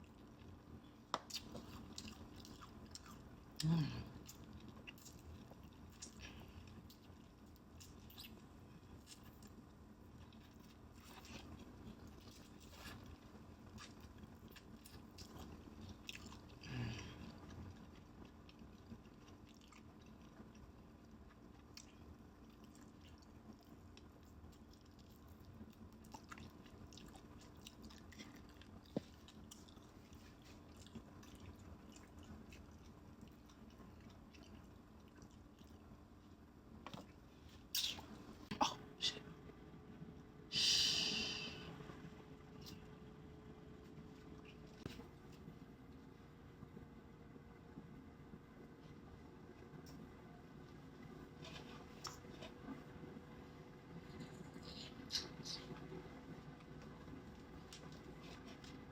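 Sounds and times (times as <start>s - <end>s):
chewing crunchy food: 0.0s - 38.5s, 51.3s - 53.0s, 54.0s - 58.9s.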